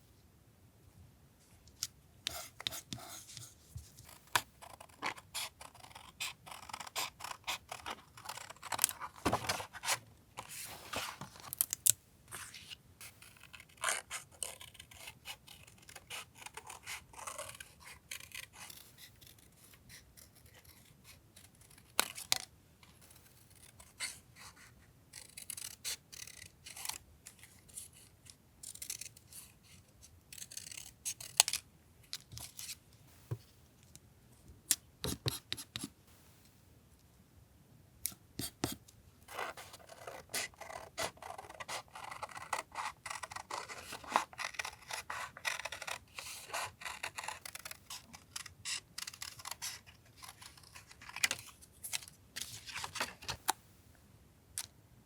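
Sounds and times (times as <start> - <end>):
paper scraping and rustling: 7.8 - 11.6.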